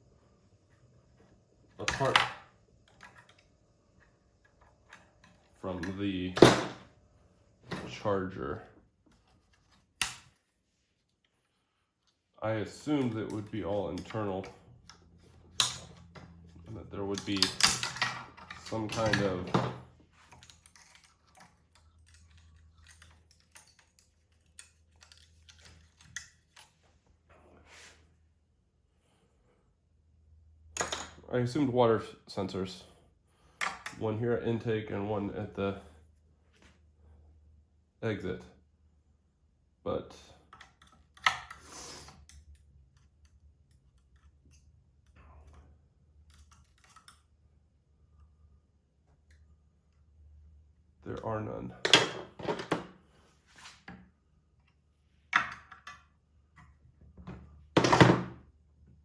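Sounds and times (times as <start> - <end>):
faint clicks of small parts: 1.8 - 6.0, 20.1 - 26.9, 40.4 - 47.4.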